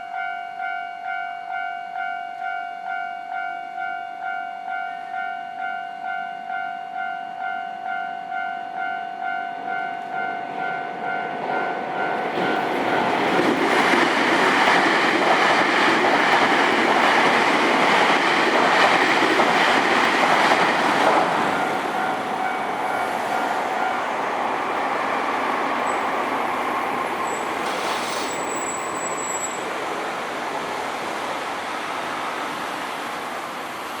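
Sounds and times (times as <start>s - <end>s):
level-crossing warning bell: 0.0s - 27.6s
train passing with rail noise: 0.0s - 34.0s
high squeal: 27.1s - 29.7s.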